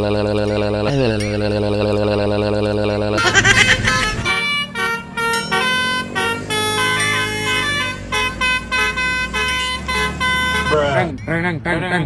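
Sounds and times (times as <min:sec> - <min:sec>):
musical air horn tune: 0:03.2 - 0:10.9.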